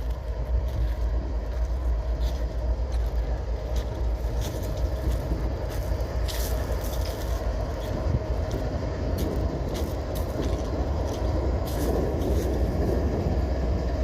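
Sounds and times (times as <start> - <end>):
locomotive engine idling: 0.0 - 14.0.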